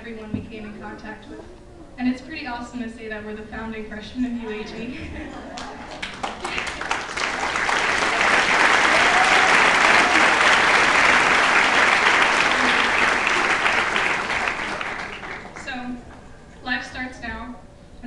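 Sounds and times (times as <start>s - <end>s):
audience applauding: 5.6s - 15.7s.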